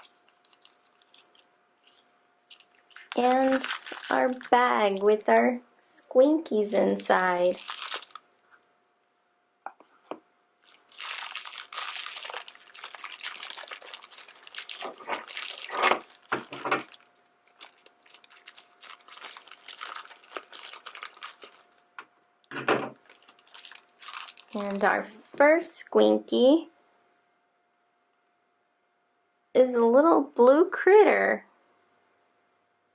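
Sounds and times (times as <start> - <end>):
plastic bag crinkling: 0.0 - 5.3, 6.8 - 8.7, 10.6 - 22.0, 22.9 - 25.5.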